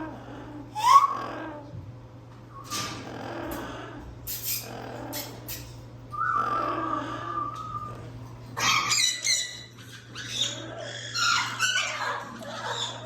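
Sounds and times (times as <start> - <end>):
parrot whistling and calling: 0.8 - 1.2, 6.1 - 8.0, 8.6 - 13.0.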